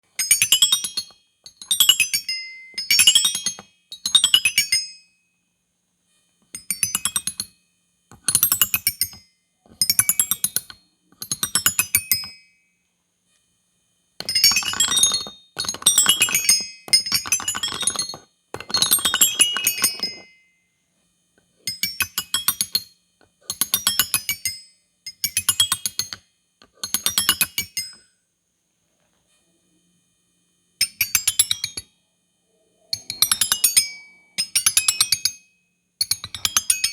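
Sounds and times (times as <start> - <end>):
musical toy tinkling notes: 0.2 - 5.2, 32.9 - 35.4.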